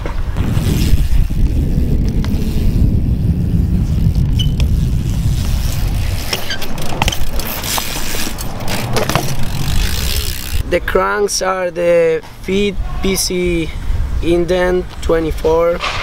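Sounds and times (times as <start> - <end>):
bike tyres rolling on hard ground: 0.0 - 10.6.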